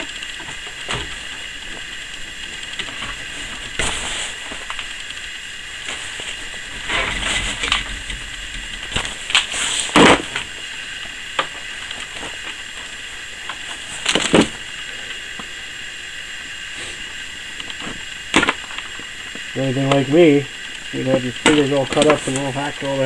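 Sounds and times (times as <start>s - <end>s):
steady hiss: 0.0s - 23.0s
wire stripper scraping cable: 5.8s - 10.5s.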